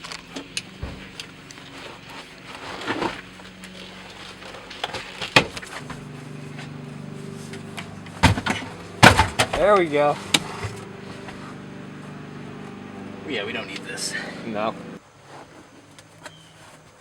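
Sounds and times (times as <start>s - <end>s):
carpet and trim being pulled: 5.6s - 14.7s
steady low hum: 5.6s - 15.0s.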